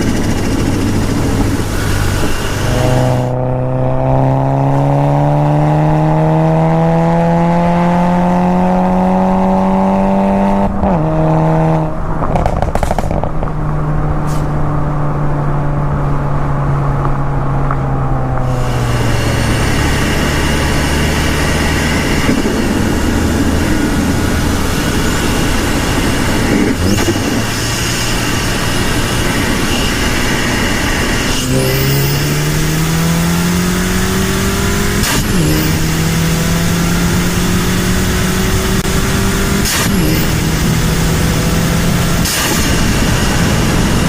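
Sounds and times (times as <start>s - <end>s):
car engine accelerating: 0.0s - 44.0s.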